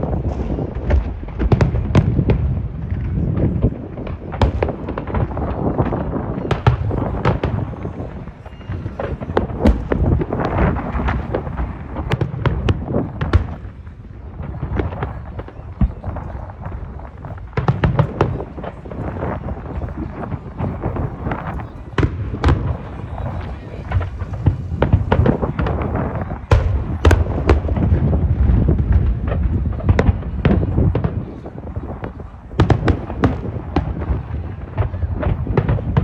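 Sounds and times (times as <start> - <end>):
fireworks cracking and popping: 0.0 - 36.0
low rumble of explosions: 0.0 - 36.0.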